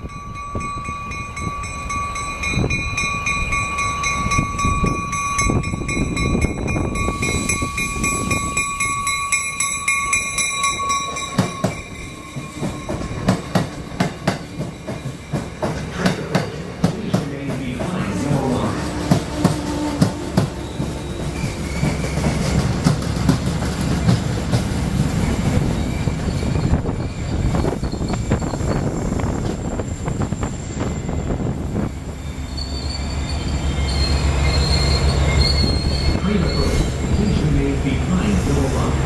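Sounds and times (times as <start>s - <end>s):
train high whine: 0.0s - 39.0s
train wheel clicks over rail joints: 11.3s - 17.6s.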